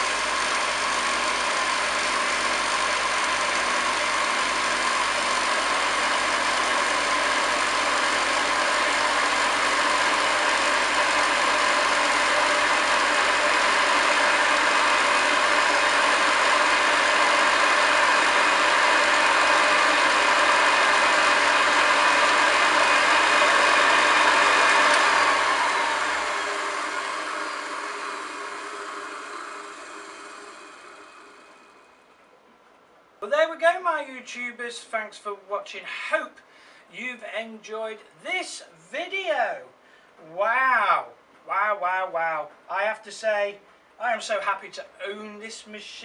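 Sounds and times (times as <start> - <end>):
vacuum cleaner motor whirring: 0.0 - 32.1
vacuum motor winding down: 0.0 - 32.2.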